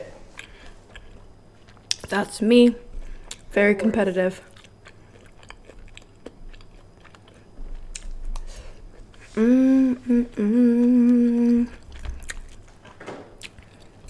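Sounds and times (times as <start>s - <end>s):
soft chewing: 0.0s - 14.0s
woman humming: 9.2s - 11.9s.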